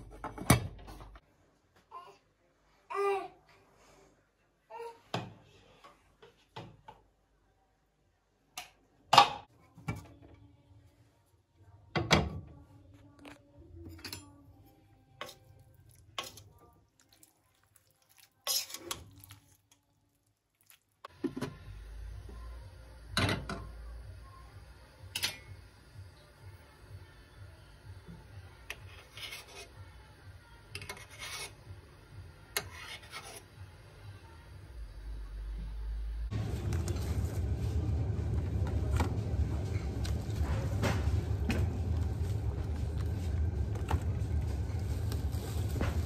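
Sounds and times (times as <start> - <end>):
dishes and pots clinking: 25.1 - 25.5
steady low hum: 33.6 - 46.0.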